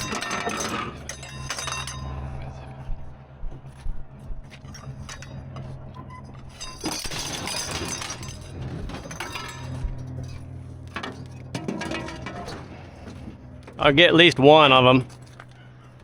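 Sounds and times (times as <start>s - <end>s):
scrap clattering and clinking: 0.0s - 2.7s, 4.5s - 13.8s
steady low hum: 0.0s - 16.0s.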